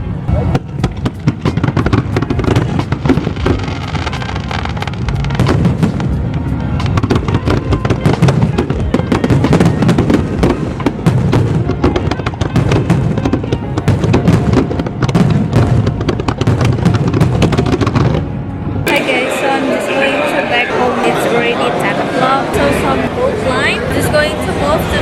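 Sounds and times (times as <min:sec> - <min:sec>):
fireworks bangs and crackles: 0:00.0 - 0:19.8
music: 0:00.0 - 0:25.0.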